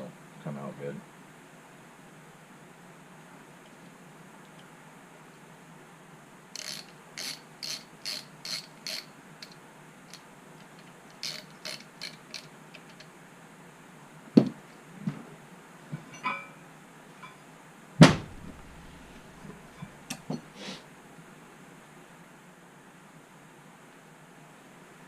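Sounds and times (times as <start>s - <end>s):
socket ratchet clicking: 6.6s - 13.1s
metal knock: 18.0s - 18.8s.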